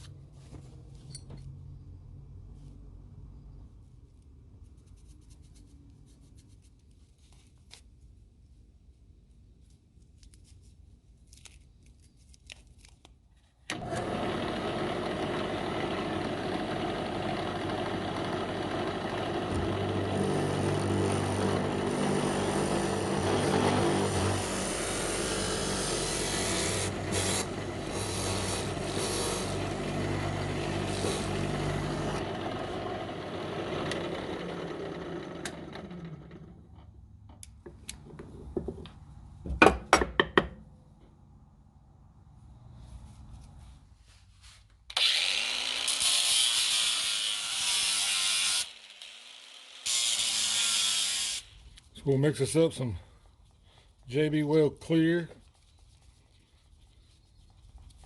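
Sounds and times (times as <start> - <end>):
power tool running: 13.7 - 36.6, 44.9 - 51.5.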